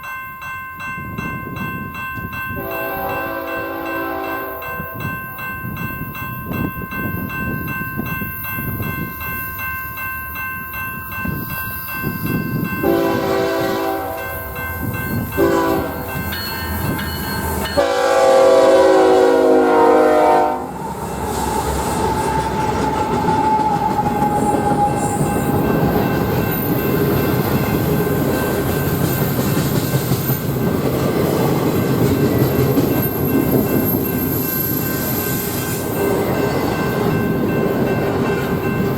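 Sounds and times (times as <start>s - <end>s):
train rumbling past: 0.9s - 38.9s
train horn blasts: 2.6s - 5.1s, 12.8s - 14.6s, 15.3s - 16.2s, 17.7s - 20.8s.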